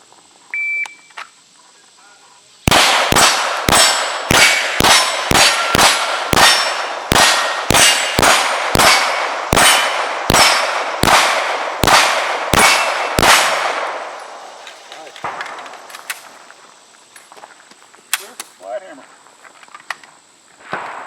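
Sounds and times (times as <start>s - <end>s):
pistol shots: 2.7s - 14.4s
steel targets ringing: 3.2s - 10.8s.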